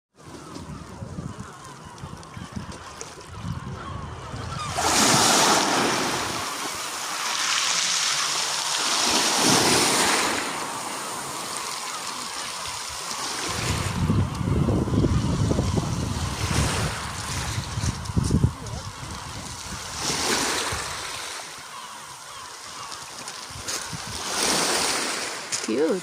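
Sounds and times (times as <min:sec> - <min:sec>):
wind buffeting microphone: 0:00.4 - 0:06.6, 0:13.4 - 0:21.0, 0:23.5 - 0:24.4
sea waves breaking on beach: 0:02.8 - 0:26.0.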